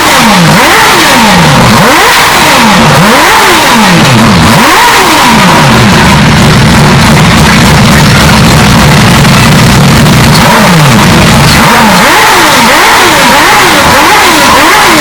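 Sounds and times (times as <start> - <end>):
rotary engine revving: 0.0 - 15.0.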